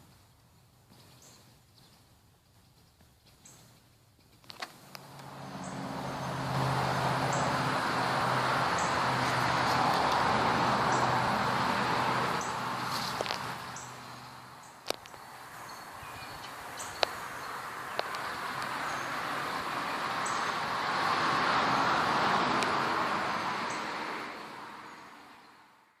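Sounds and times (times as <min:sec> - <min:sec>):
birds chirping: 0:00.6 - 0:25.7
sharp clicks: 0:14.8 - 0:15.2, 0:17.9 - 0:18.8.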